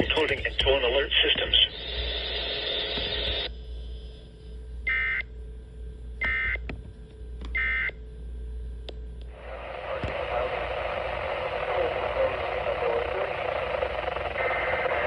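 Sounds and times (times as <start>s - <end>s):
faint radio hiss: 0.0s - 3.5s, 9.3s - 15.0s.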